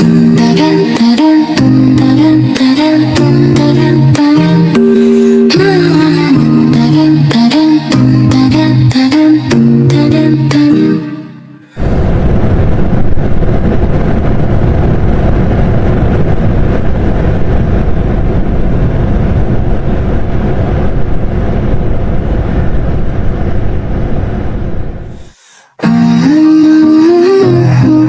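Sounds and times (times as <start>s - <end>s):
wind buffeting microphone: 11.8s - 25.2s.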